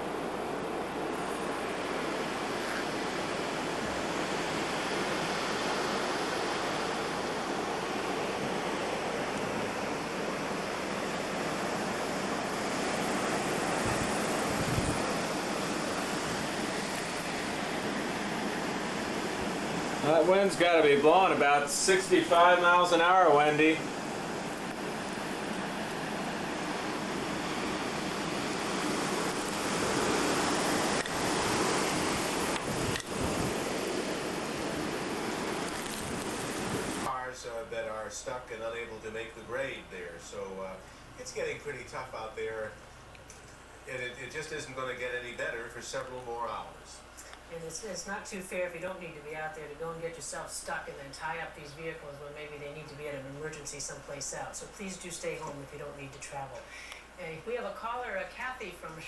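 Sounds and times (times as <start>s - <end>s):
blizzard wind blowing hard: 0.0s - 20.4s, 23.8s - 37.1s
wind gusts buffeting microphone: 0.2s - 37.1s.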